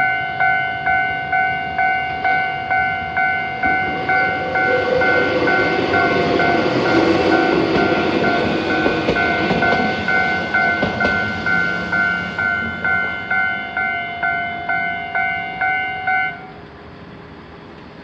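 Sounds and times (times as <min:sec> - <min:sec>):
level-crossing warning bell: 0:00.0 - 0:16.7
train wheels clicking over rail joints: 0:02.7 - 0:15.8.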